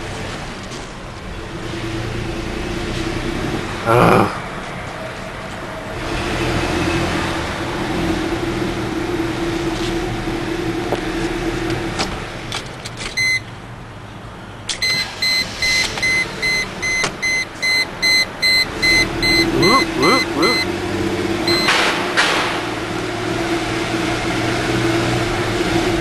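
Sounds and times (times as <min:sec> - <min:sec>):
high electronic warning beep: 0:14.8 - 0:20.7, 0:21.5 - 0:21.8.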